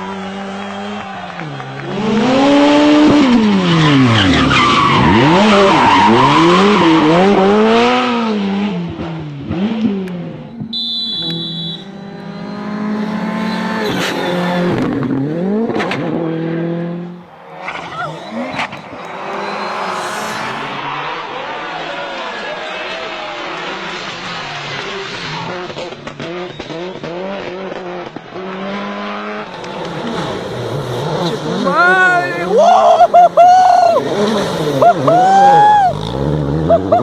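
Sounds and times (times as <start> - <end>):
rally car engines revving: 0.0 - 37.0
tyres squealing and skidding: 3.5 - 7.8, 13.4 - 14.9, 17.1 - 23.6.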